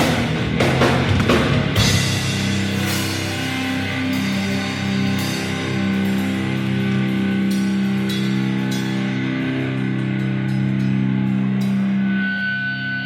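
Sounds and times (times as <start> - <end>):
distorted electric guitar: 0.0 - 13.0
drums: 0.0 - 13.0.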